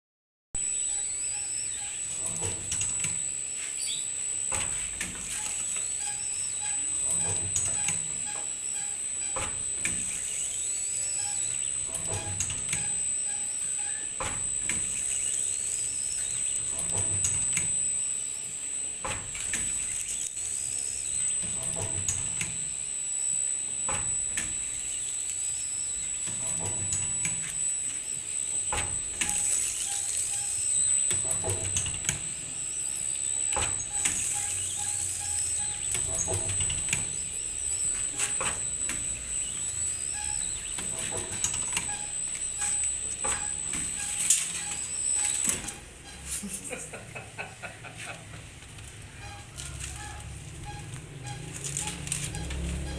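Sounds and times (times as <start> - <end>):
steady high whine: 0.6 - 52.9
squeaks: 5.2 - 18.0, 24.6 - 46.5, 48.9 - 52.9.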